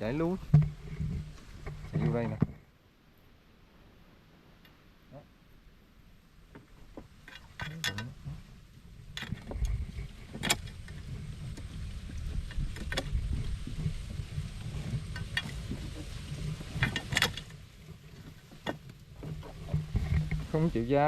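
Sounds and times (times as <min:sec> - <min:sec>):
wind noise on microphone: 0:00.0 - 0:02.6, 0:07.8 - 0:21.0
rustling: 0:00.0 - 0:02.7, 0:06.4 - 0:21.0
low rumble of handling: 0:06.5 - 0:21.0.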